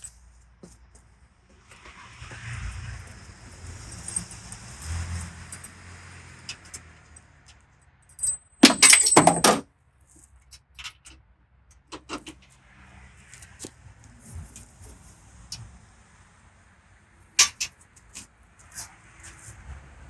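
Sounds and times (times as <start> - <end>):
metal hand tools clattering: 8.2 - 9.6.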